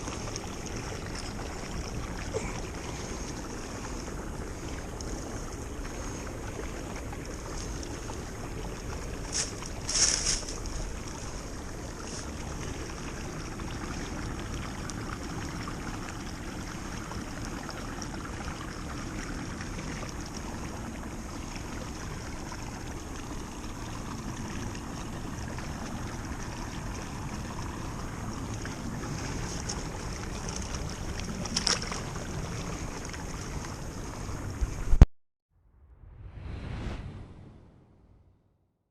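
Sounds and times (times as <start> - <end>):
steady rushing outdoor noise: 0.0 - 14.6, 19.0 - 35.0.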